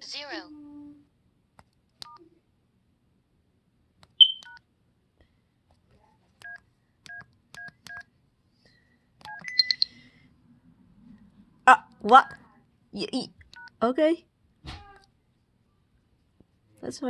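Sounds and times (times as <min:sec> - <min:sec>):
phone keypad beeps: 0:04.2 - 0:04.6, 0:09.3 - 0:09.9.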